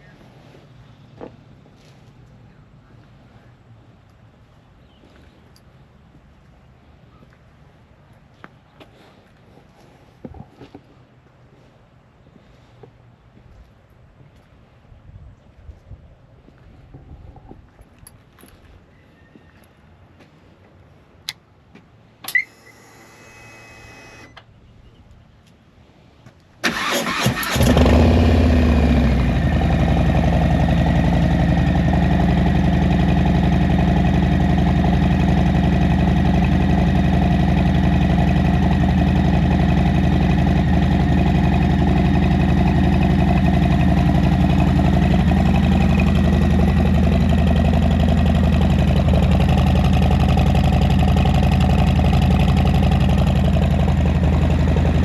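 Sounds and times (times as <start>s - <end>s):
motorcycle engine starting: 26.6s - 55.0s
motorcycle engine idling: 26.8s - 55.0s.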